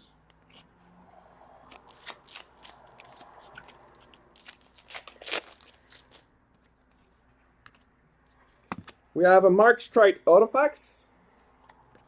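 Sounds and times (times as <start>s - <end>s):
wrapper crinkling: 1.7s - 6.3s
cards being handled: 1.7s - 7.9s.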